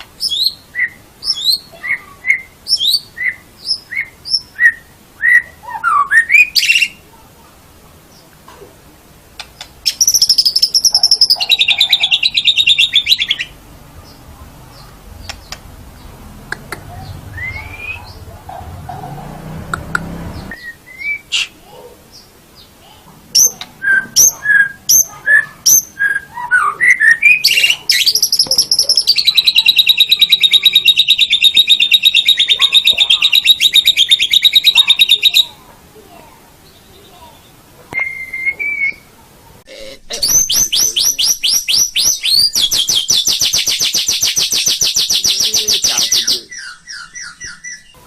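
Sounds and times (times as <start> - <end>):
bird clear whistled notes: 17.3 - 18.2, 20.5 - 21.6, 38.0 - 39.1
bird fast rattling trill: 40.3 - 47.4.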